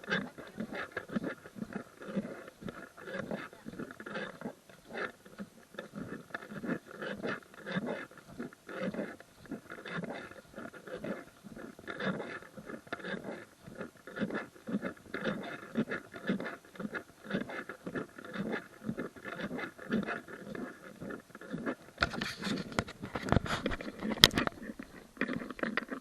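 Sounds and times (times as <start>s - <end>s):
footsteps on a trail: 0.0s - 26.0s
sharp clicks and rustles: 21.8s - 26.0s.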